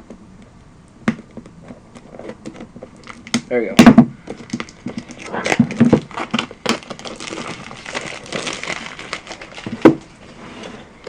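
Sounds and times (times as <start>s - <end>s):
plastic and cardboard rustling: 1.2s - 11.0s.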